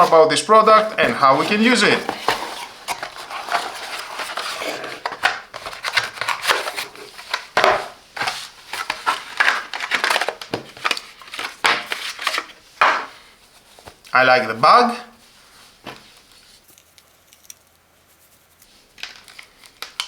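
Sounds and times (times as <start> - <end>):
packaging rustling and crinkling: 0.0 - 14.1, 18.6 - 20.0.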